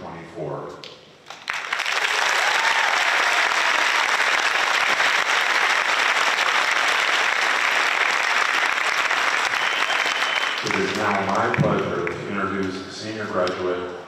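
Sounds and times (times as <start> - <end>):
large audience applauding: 1.3 - 12.2.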